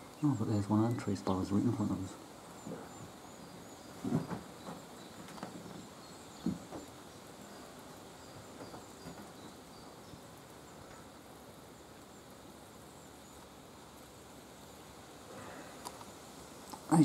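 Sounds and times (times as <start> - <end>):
distant bird chirps: 0.0 - 17.0
soft knocks: 4.0 - 5.8, 6.4 - 6.9.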